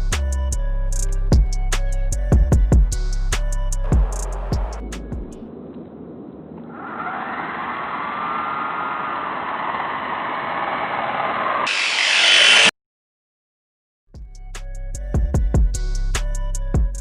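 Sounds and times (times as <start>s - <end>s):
small electric motors whining: 9.0s - 12.7s.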